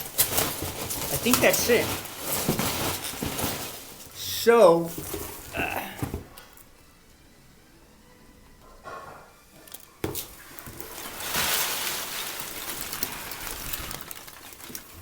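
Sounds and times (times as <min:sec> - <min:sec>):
packing material rustling: 0:00.0 - 0:06.4, 0:10.2 - 0:15.0.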